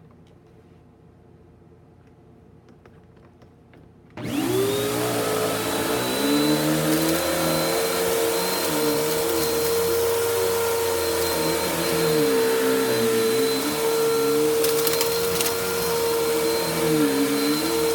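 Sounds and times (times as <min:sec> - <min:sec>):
vacuum cleaner motor whine: 0:04.2 - 0:17.9.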